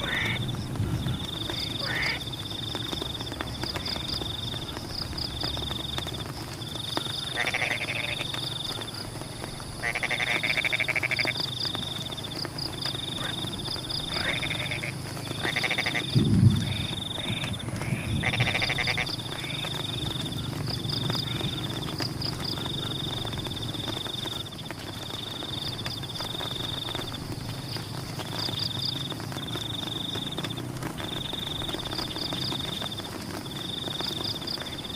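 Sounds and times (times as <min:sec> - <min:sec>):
chorus of trilling frogs: 0:00.0 - 0:34.9
frogs bleating calls: 0:00.0 - 0:34.9
low rumble: 0:16.1 - 0:19.0.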